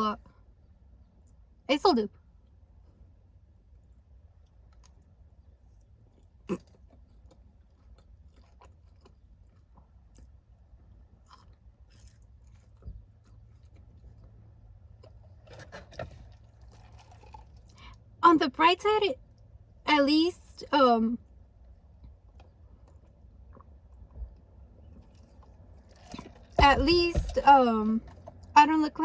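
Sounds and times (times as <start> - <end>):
chewing and biting food: 3.8 - 18.2, 21.2 - 28.5.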